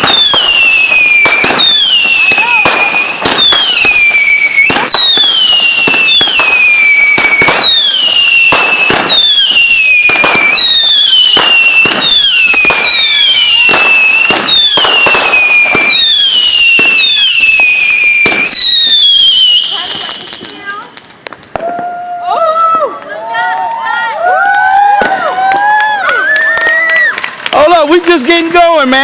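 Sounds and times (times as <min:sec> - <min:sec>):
whistling firework shots: 0:00.0 - 0:22.1
firework cracks: 0:00.0 - 0:29.0.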